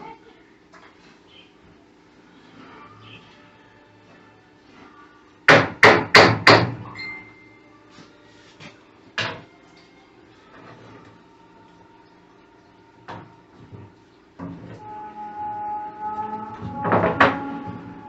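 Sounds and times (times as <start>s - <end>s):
hammer strikes: 5.5s - 6.8s.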